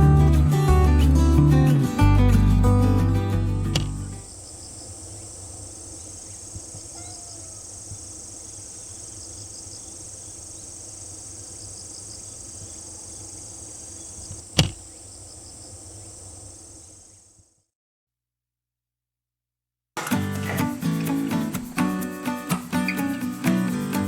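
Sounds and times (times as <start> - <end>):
sharp knock: 3.7 - 4.2, 14.6 - 14.8
cricket pulsed chirps: 3.8 - 17.4
crickets trilling: 3.8 - 17.6, 20.0 - 24.0.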